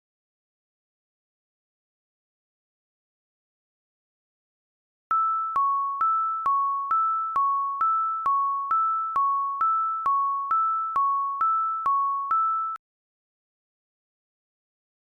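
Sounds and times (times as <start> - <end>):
electronic two-tone school bell: 5.1 - 12.8.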